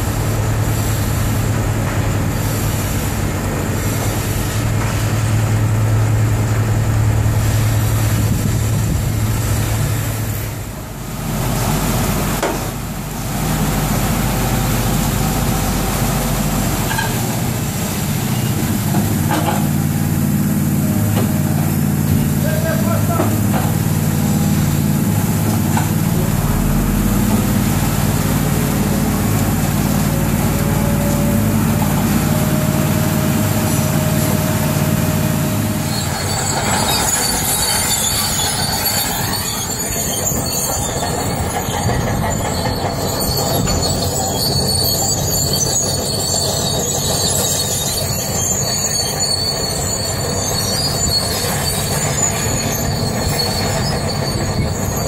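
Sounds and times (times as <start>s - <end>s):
heavy machinery engine running: 0.0s - 55.0s
high-pitched metallic squealing: 18.1s - 55.0s.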